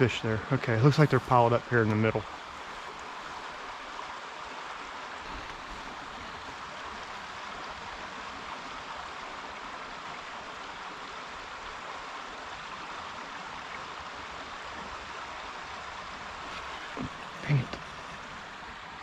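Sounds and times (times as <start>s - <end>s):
creek water flowing: 0.0s - 19.0s.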